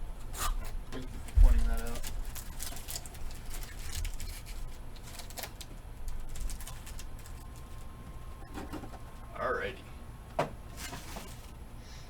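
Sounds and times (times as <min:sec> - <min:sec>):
steady low hum: 0:00.0 - 0:12.0
card packaging crinkling and clicking: 0:01.2 - 0:08.0.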